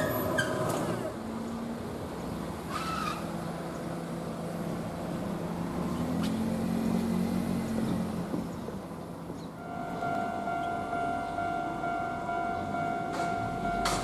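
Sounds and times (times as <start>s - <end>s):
short squeal: 0.0s - 1.0s, 2.7s - 3.3s.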